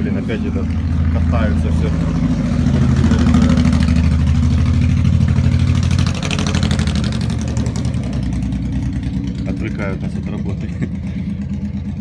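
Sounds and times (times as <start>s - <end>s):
car engine humming: 0.0s - 12.0s.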